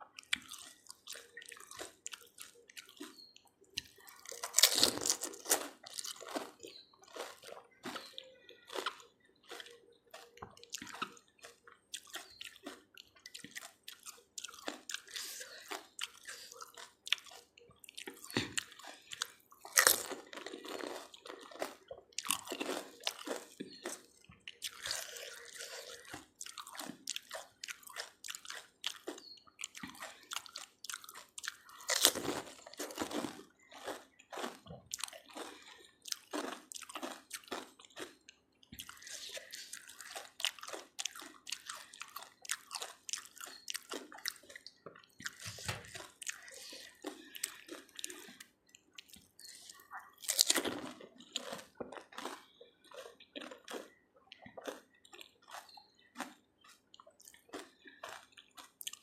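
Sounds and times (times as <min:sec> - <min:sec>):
wet crunching and chewing: 0:00.0 - 0:59.0
crisp shells cracking when bitten: 0:03.8 - 0:06.4.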